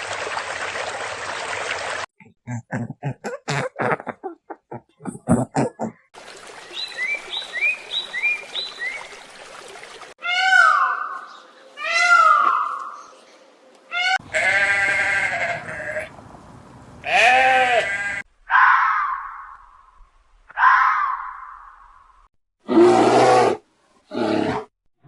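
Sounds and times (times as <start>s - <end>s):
bleat-like animal call: 14.0s - 18.2s
animal drawn-out calls: 14.2s - 18.2s
hissy background: 14.3s - 18.2s.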